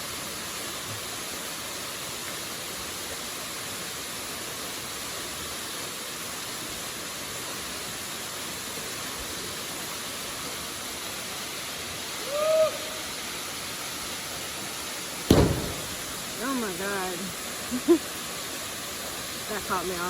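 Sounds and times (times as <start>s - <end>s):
waterfall rushing: 0.3s - 20.0s
short hoot-like call: 12.2s - 13.0s.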